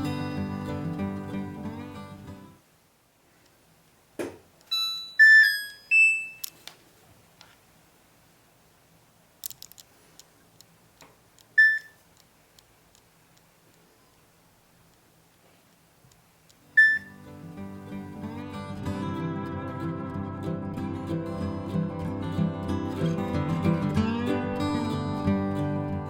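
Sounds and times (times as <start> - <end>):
washer control panel beeps: 4.7 - 6.5, 11.6 - 12.0, 16.8 - 17.2.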